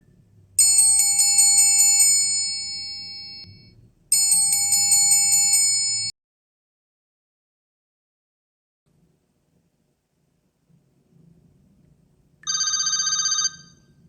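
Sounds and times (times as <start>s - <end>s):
pulsing chiming ringtone: 0.6s - 6.1s.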